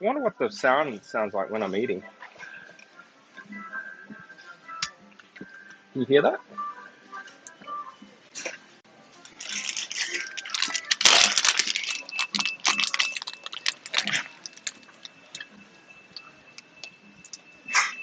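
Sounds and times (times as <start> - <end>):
crackly chewing: 9.3 - 15.5.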